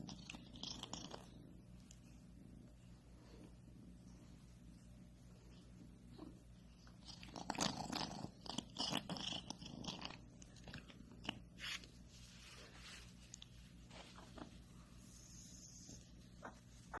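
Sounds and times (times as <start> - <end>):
cat chewing crunchily: 0.0 - 1.4, 6.9 - 11.8.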